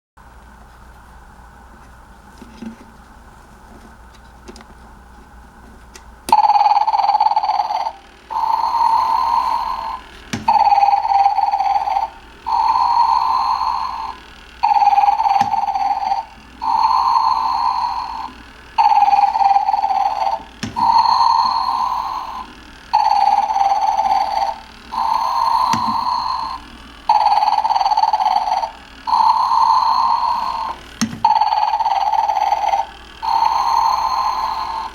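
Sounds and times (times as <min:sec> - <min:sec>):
recorded snore through small speaker: 0:06.4 - 0:34.9.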